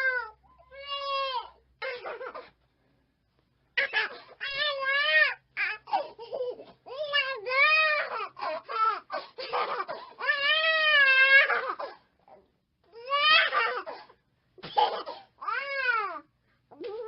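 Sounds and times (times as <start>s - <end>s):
high-pitched crying wails: 3.8s - 12.0s.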